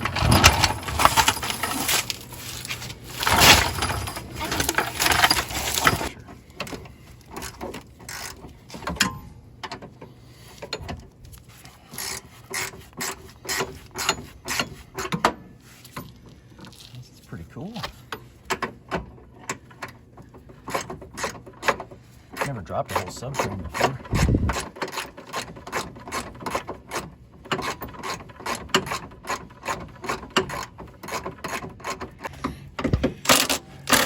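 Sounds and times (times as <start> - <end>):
ratchet wrench rattling: 7.4 - 9.0.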